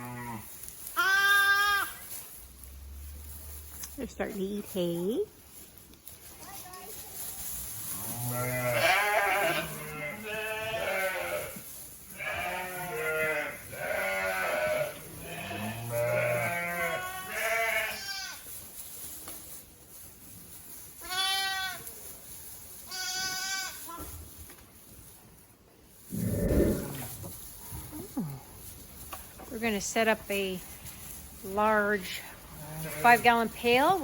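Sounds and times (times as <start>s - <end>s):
lambs bleating: 0.0s - 2.0s, 8.0s - 18.4s, 21.0s - 21.8s, 22.9s - 24.1s, 32.5s - 33.4s.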